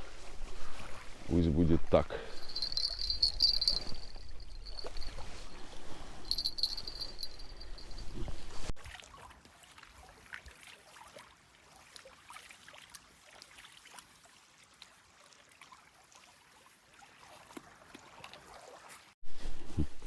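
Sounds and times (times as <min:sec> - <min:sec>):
faint trickling water: 0:00.7 - 0:08.2, 0:08.8 - 0:19.2.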